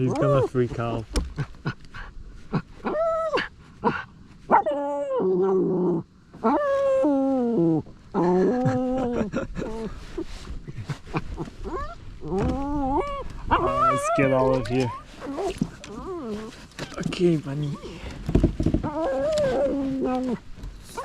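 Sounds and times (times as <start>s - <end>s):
dog whining and yelping: 2.8s - 9.7s, 11.6s - 17.0s, 18.8s - 21.0s.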